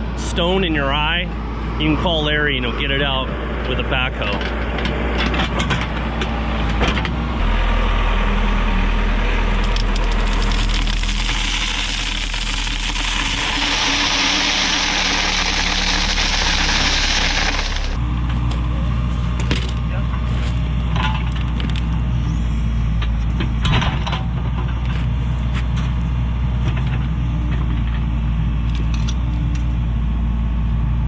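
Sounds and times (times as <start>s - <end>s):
backhoe diesel engine running: 6.1s - 18.1s
loud rushing hiss: 11.4s - 18.0s.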